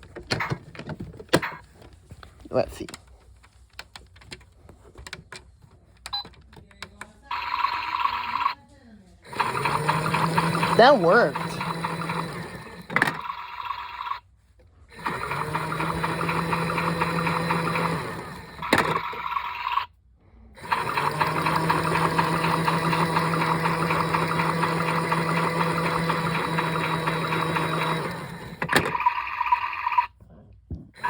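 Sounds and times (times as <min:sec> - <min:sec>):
washing machine motor humming: 0:07.3 - 0:08.6, 0:09.2 - 0:14.2, 0:14.9 - 0:19.9, 0:20.6 - 0:30.1.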